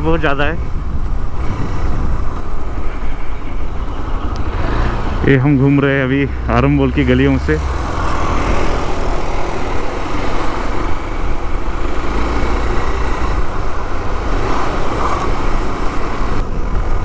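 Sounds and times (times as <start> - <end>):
wind rush on microphone: 0.0 - 5.2
motorcycle engine running: 0.0 - 17.0.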